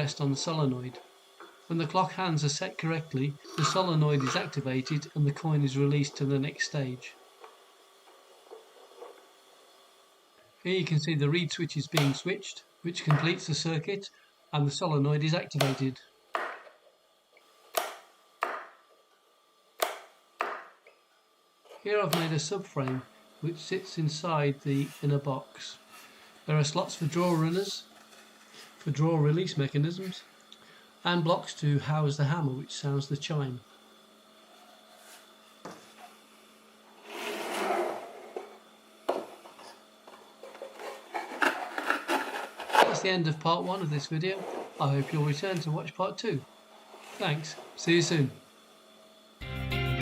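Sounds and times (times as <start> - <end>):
sharp wooden knock: 15.6 - 16.6
wood sliding on wood: 37.0 - 38.6, 44.3 - 45.4.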